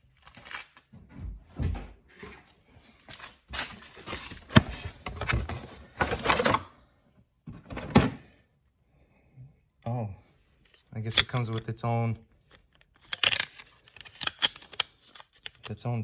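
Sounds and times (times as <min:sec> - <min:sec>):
packaging rustling and clattering: 0:03.0 - 0:06.7.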